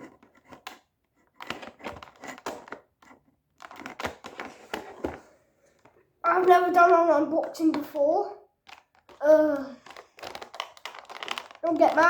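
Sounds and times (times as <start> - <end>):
toy packaging crinkling: 6.4 - 12.0.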